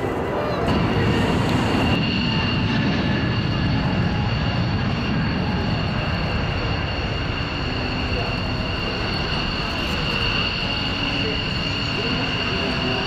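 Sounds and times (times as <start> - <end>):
jet engines rumbling and whining: 0.0 - 13.0.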